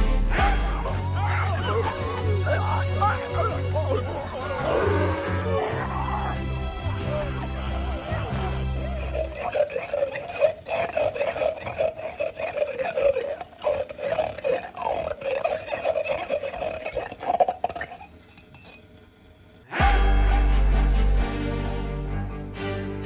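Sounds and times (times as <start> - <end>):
warbling creature cry: 8.8 - 19.8.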